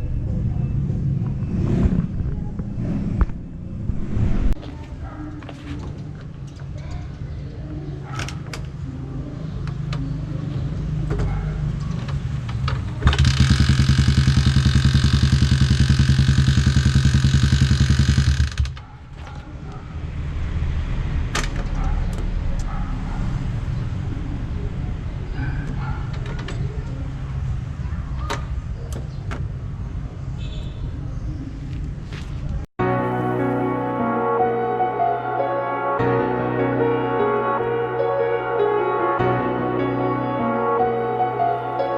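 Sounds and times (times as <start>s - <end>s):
motorcycle engine idling and revving: 0.0s - 3.9s, 8.4s - 19.2s.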